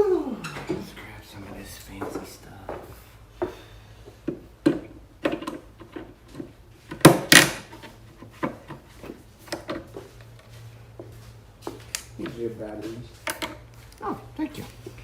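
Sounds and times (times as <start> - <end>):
tools knocking and clicking: 13.2 - 13.6.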